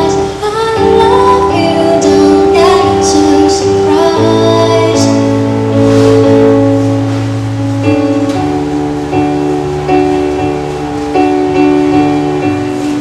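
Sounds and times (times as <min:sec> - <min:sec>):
woman singing slow melody: 0:00.0 - 0:05.8
instrumental accompaniment: 0:00.0 - 0:13.0.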